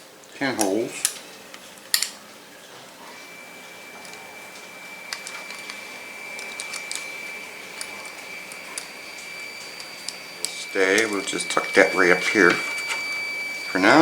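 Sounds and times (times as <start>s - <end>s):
high-pitched whine: 3.2s - 14.0s.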